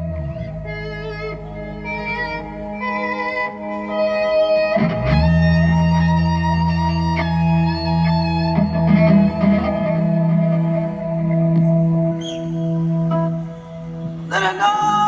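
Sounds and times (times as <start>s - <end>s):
guitar held notes: 0.0s - 15.0s
guitar strums: 0.0s - 15.0s.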